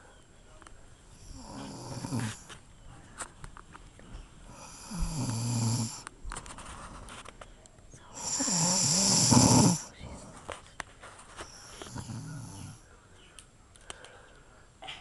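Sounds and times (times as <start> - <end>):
woman snoring: 1.2 - 2.4, 4.5 - 6.1, 8.1 - 9.9, 11.7 - 12.8.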